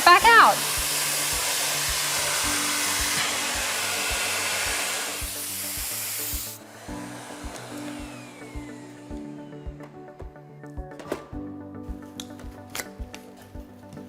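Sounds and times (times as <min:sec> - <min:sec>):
vacuum cleaner running: 0:00.0 - 0:10.8
background music with steady beat: 0:00.0 - 0:14.0.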